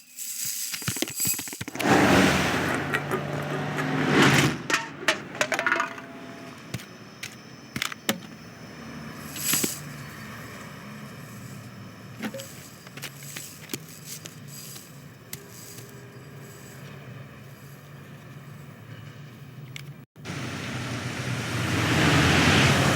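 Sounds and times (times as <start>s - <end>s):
low traffic rumble: 1.8s - 22.9s
clicks and knocks: 2.7s - 8.3s.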